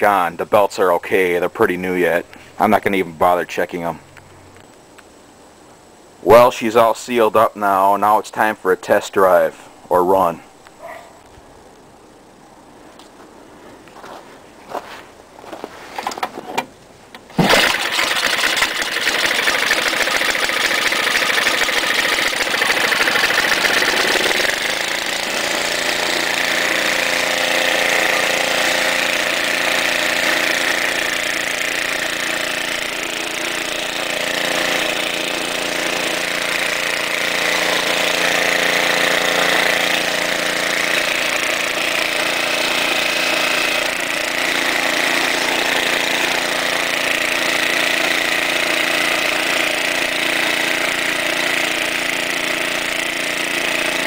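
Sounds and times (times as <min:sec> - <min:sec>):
snowblower engine running: 0:17.4 - 0:54.0.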